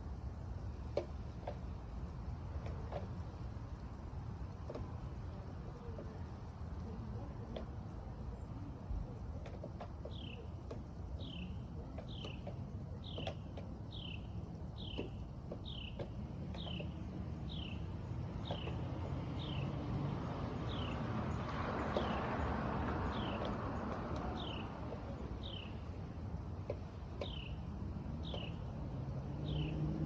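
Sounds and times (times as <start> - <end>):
bird calling: 26.7 - 27.6.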